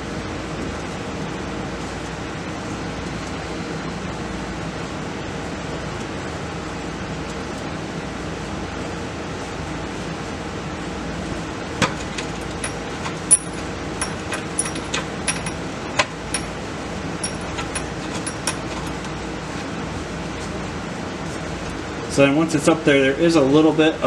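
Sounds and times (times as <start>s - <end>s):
steady background hum: 0.0s - 24.0s
metallic clicks and clinks of tools: 11.8s - 16.6s, 17.2s - 19.1s.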